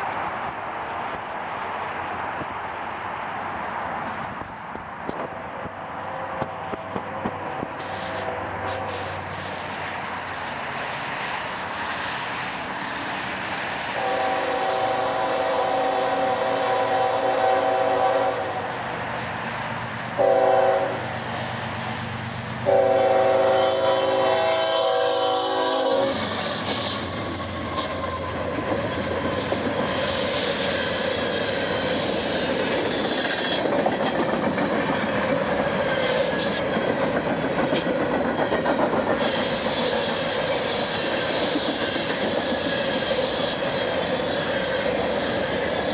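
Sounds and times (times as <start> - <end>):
train wheels rumbling on rails: 0.0 - 45.9
locomotive air horn chord: 14.0 - 18.7, 20.2 - 21.0, 22.6 - 26.2.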